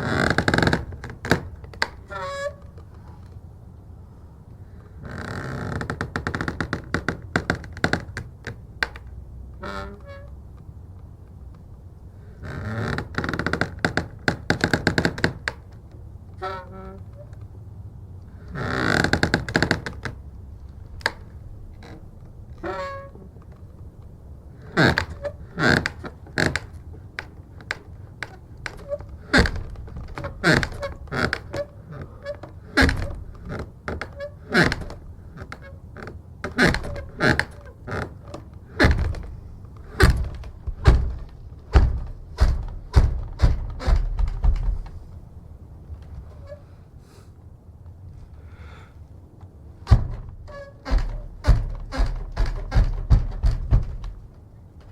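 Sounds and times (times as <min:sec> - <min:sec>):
wooden door creaking on hinges: 0:00.0 - 0:03.4, 0:04.9 - 0:10.6, 0:12.3 - 0:17.6, 0:18.2 - 0:46.8, 0:49.7 - 0:54.9
door banging and thumping: 0:24.8 - 0:35.6, 0:36.5 - 0:45.1, 0:49.8 - 0:54.9.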